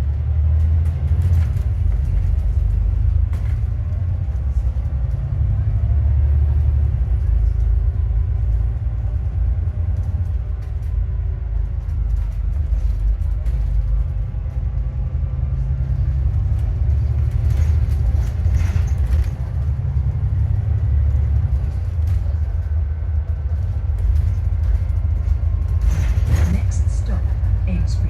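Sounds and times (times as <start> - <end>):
bus engine rumble: 0.0 - 28.0
rattles: 16.3 - 27.8.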